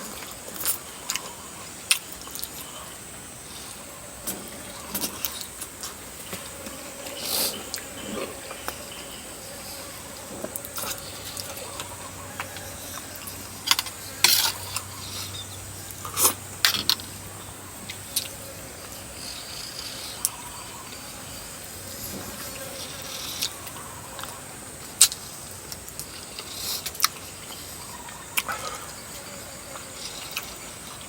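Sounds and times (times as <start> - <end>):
chewing: 0.0 - 2.9, 3.5 - 17.1, 25.0 - 31.0.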